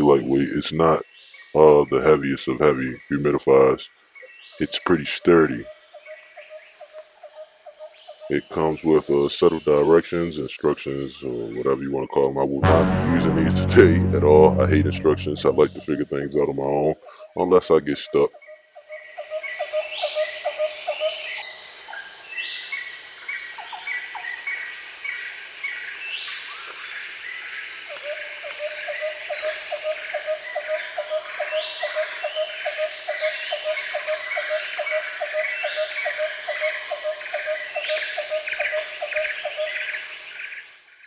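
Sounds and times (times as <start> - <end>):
low pulsed call: 12.6 - 16.0.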